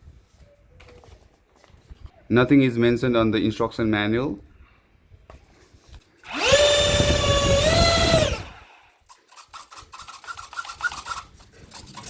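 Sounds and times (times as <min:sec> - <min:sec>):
toy electric motors whirring: 0:06.2 - 0:12.0.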